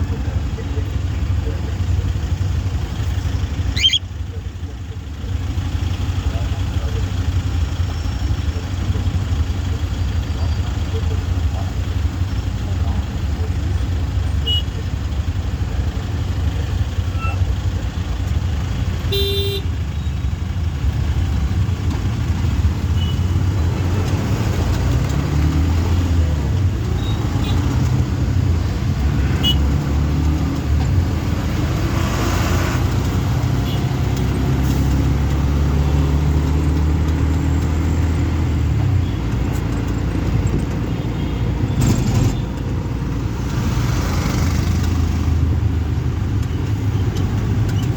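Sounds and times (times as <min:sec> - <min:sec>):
rickshaw engine running: 0:00.0 - 0:32.1.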